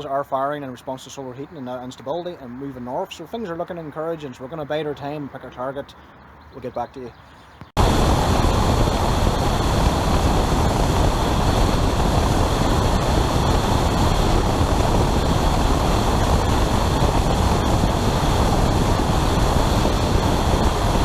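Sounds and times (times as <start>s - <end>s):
car road and wind noise: 7.6s - 21.0s.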